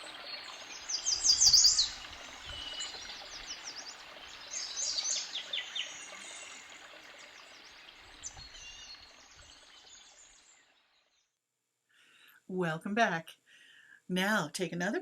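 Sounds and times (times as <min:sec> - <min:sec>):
stream running: 0:00.0 - 0:11.0
birds chirping: 0:00.0 - 0:11.3.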